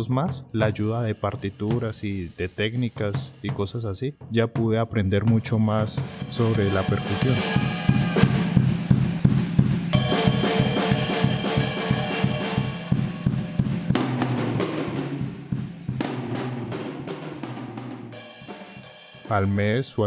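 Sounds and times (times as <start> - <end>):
drum kit playing quick beat: 0.0 - 20.0
held instrument notes: 4.8 - 11.5.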